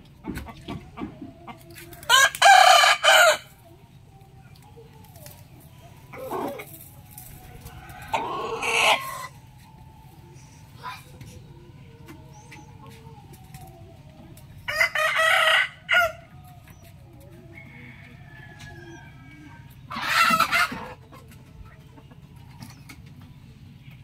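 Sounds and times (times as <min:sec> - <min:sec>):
rooster crowing: 0:02.1 - 0:03.5, 0:14.7 - 0:16.5
steady low hum: 0:03.0 - 0:20.0.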